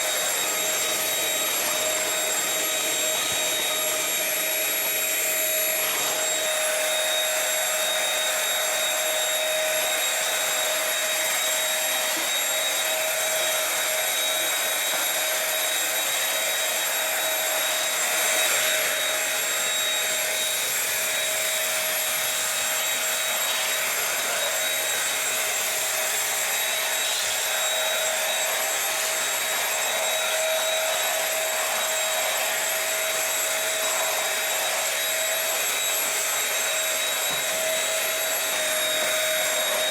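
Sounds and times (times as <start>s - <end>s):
stick vacuum motor whine: 0.0s - 39.9s.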